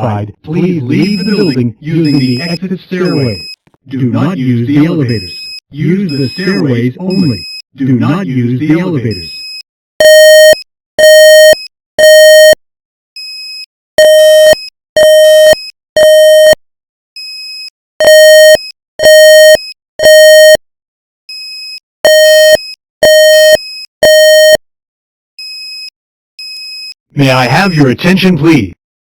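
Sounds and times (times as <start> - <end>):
fire alarm beeps: 1.0 - 3.6, 9.2 - 12.6, 13.5 - 16.6, 17.5 - 20.6, 22.1 - 24.6.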